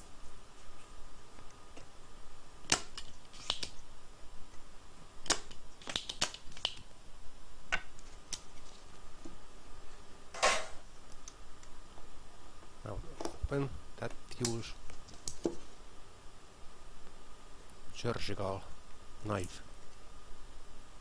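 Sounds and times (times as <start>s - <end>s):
faint high hum: 0.0s - 21.0s.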